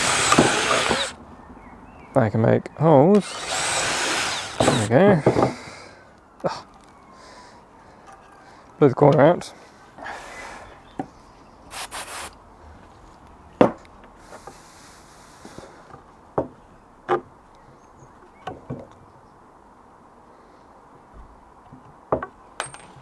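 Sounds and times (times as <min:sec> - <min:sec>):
wooden knocks and taps: 0:15.9 - 0:17.3, 0:21.2 - 0:22.9.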